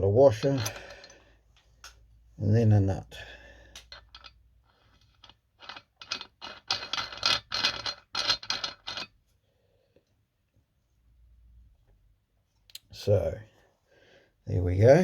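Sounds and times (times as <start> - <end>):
metallic scrapes and clicks: 0.3 - 1.2.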